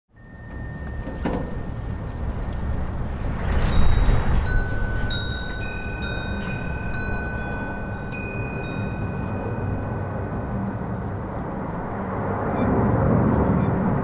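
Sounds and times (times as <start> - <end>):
wind chimes tinkling: 0.1 - 11.2
wind low rumble: 0.1 - 14.0.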